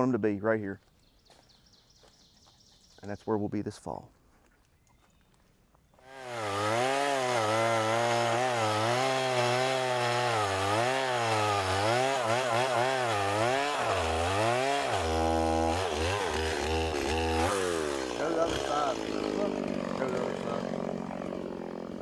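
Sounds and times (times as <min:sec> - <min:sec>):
chainsaw cutting a log: 0:06.0 - 0:22.0.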